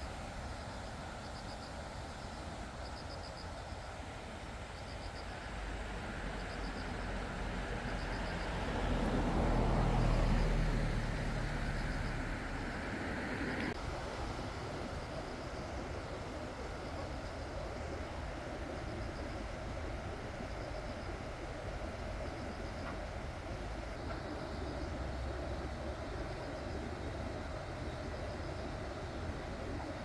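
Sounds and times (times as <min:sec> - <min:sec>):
insects chirping in trills: 0:00.0 - 0:30.0
vehicle passing by: 0:07.0 - 0:13.8.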